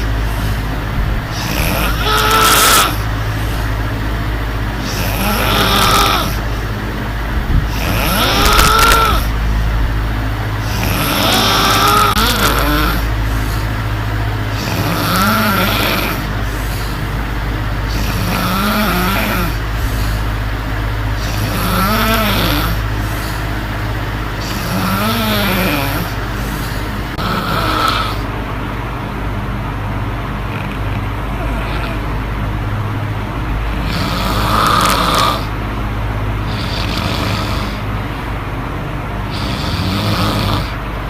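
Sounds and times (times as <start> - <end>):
woman snoring: 0.0 - 4.0, 4.8 - 6.8, 7.6 - 9.9, 10.6 - 13.8, 14.4 - 17.1, 17.8 - 20.3, 21.2 - 23.6, 24.4 - 28.3, 30.5 - 32.1, 33.7 - 35.5, 36.5 - 37.9, 39.3 - 40.8
electric fan humming: 0.0 - 41.0.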